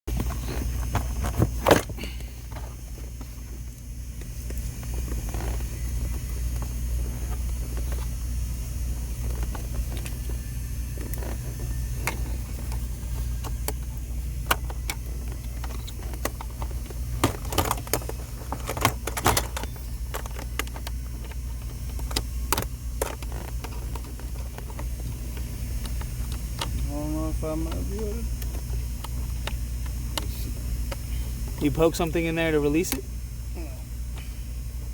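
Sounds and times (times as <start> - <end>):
steady low hum: 0.1 - 34.9
tools clicking and rattling on car parts: 9.1 - 33.1.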